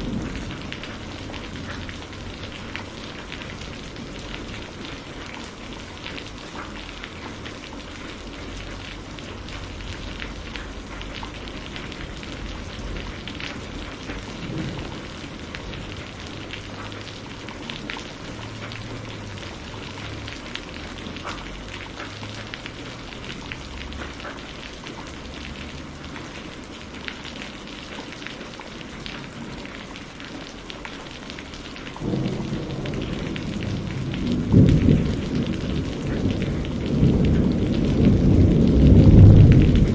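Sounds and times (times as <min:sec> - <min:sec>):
thunder rumble: 0:00.0 - 0:05.4, 0:08.4 - 0:24.2, 0:32.0 - 0:39.9
steady rain: 0:00.0 - 0:39.9.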